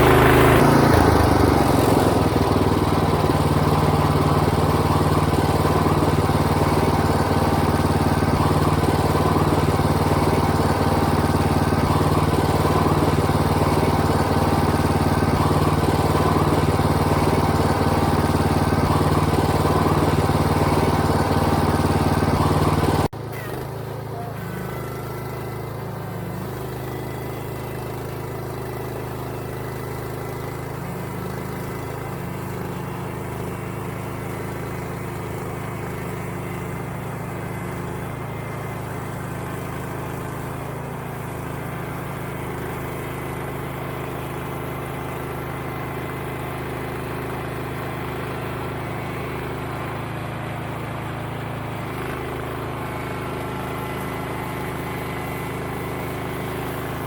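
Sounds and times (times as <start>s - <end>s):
sawmill engine running under load: 0.0s - 57.0s
quiet steady engine hum: 22.3s - 27.1s.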